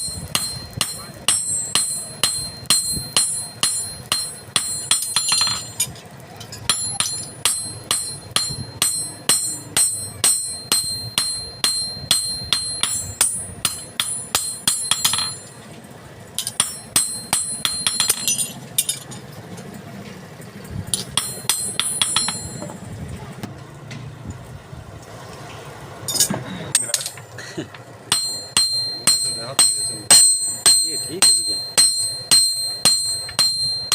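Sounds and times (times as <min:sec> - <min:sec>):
hammer striking metal on anvil: 0:00.0 - 0:15.6, 0:16.3 - 0:19.2, 0:20.9 - 0:22.8, 0:28.1 - 0:33.9.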